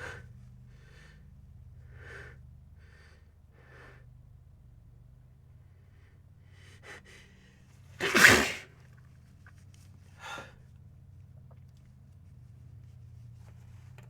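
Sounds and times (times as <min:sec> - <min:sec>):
person sneezing loudly: 0:08.0 - 0:08.7.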